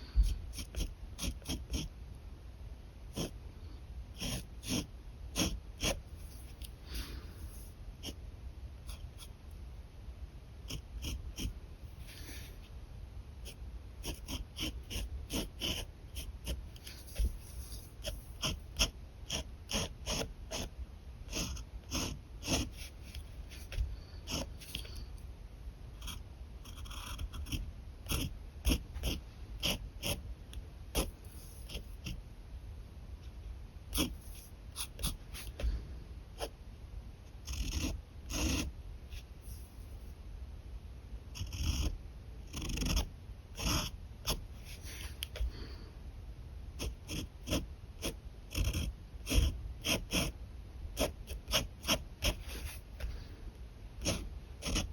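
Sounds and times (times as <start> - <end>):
pen nib scratching on paper: 0.1 - 1.9, 3.1 - 3.4, 4.1 - 8.2, 8.8 - 9.3, 10.6 - 12.5, 13.4 - 25.1, 26.0 - 32.2, 33.9 - 35.8, 37.4 - 39.7, 41.3 - 45.7, 46.8 - 50.4, 51.0 - 53.3, 54.0 - 54.9.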